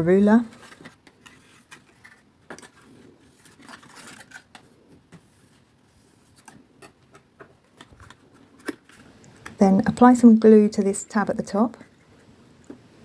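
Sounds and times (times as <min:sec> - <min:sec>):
cardstock rustling and clicking: 0:00.4 - 0:09.6.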